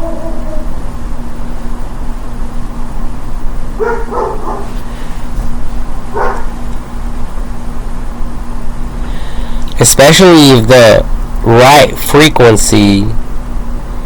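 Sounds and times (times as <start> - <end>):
steady low hum: 0.0 - 14.0
dog barking: 3.8 - 4.8, 6.1 - 6.6.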